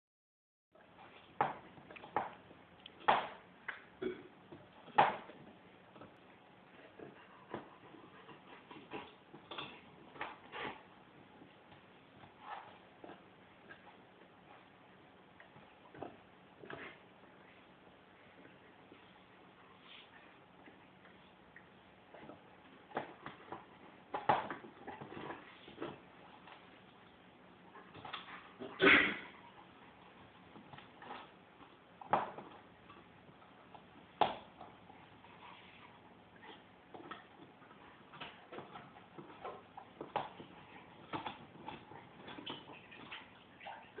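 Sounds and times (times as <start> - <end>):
dog chewing a bone: 4.6 - 17.0, 27.7 - 44.0.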